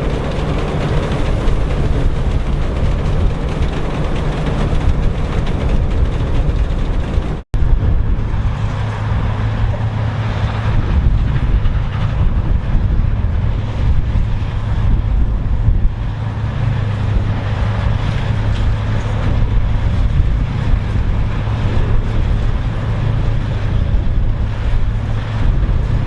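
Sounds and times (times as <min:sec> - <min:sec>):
farm machinery engines running: 0:00.0 - 0:26.0.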